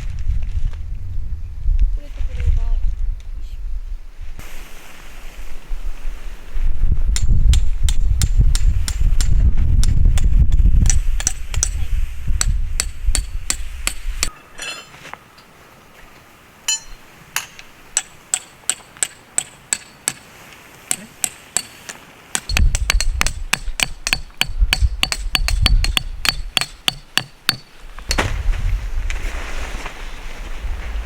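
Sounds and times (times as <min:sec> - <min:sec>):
low rumble: 0:00.0 - 0:04.1.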